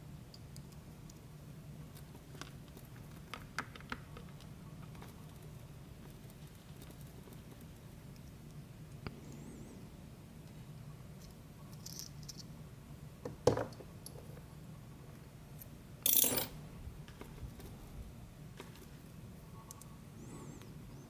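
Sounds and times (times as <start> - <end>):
small metal discs clinking: 16.0 - 16.6
metal parts clattering: 16.1 - 16.6.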